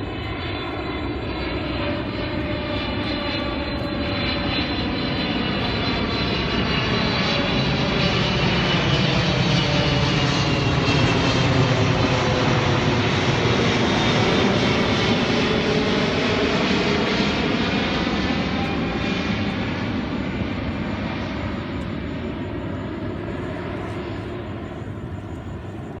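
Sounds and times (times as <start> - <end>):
jet engine roar: 0.0 - 26.0.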